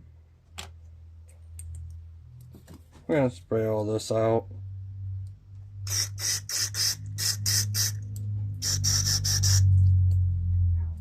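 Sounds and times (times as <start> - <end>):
steady low hum: 0.0 - 11.0
aerosol spray hissing bursts: 5.8 - 8.0, 8.6 - 9.7.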